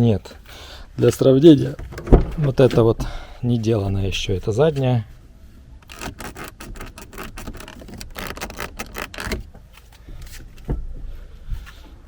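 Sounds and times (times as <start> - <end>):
door handle creaking and clicking: 1.7 - 3.0, 5.8 - 9.5.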